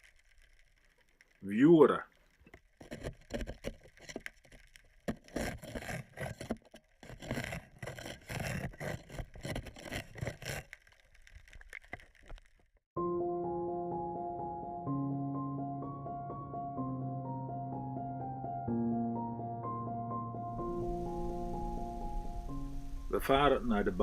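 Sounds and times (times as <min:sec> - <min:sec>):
scraping a boat hull: 0:02.2 - 0:12.5.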